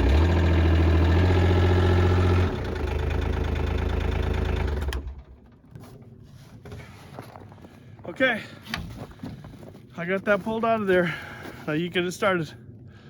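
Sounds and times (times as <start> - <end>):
utility vehicle engine running: 0.0 - 5.6.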